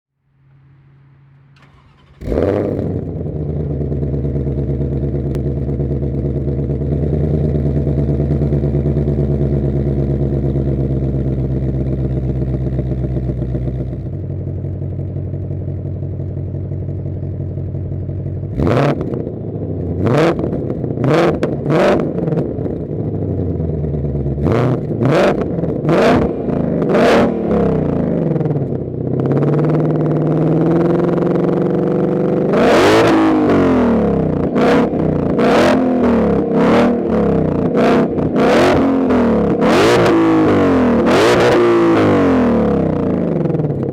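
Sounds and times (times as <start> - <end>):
car engine idling: 0.2 - 32.6
car engine revving in blips: 0.5 - 14.1, 18.5 - 43.9.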